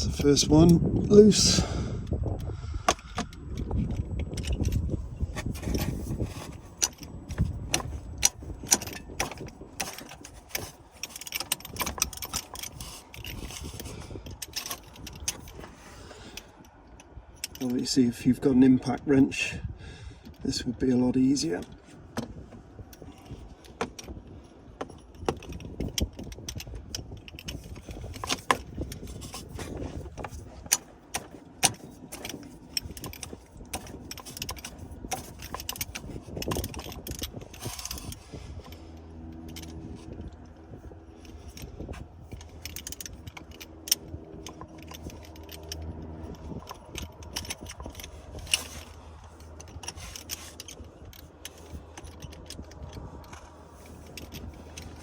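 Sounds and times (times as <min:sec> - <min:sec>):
low steady hum: 0:00.0 - 0:55.0
ratchet clicking: 0:24.8 - 0:55.0
metal hand tools clinking: 0:41.1 - 0:55.0.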